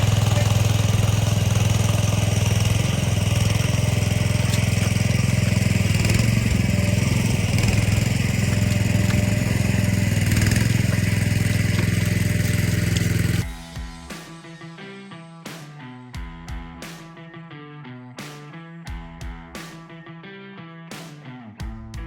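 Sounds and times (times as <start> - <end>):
small gas engine running: 0.0 - 14.3.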